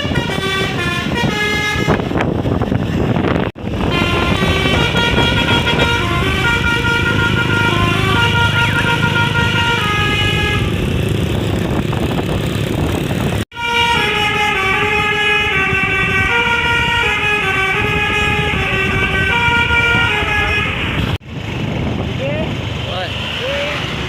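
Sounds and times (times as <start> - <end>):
multi-tone bus horn tune: 0.0 - 2.3, 3.6 - 10.9, 13.5 - 21.2
bus engine rumble: 0.0 - 24.0.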